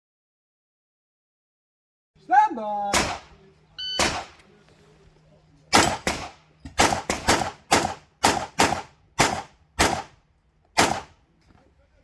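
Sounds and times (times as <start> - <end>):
pistol shots with echo: 2.9 - 4.4, 5.7 - 10.2, 10.8 - 11.2.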